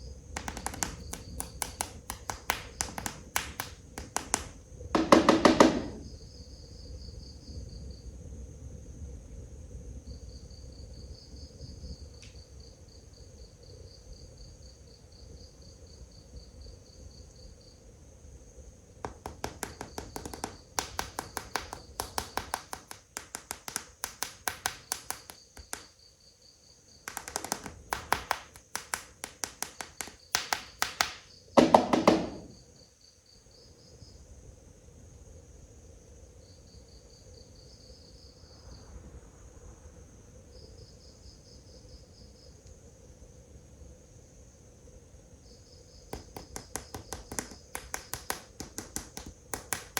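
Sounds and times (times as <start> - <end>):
crickets chirping: 0.0 - 49.9
fast run of sharp clicks: 0.4 - 6.0, 19.0 - 26.0, 27.0 - 32.5, 46.1 - 49.9.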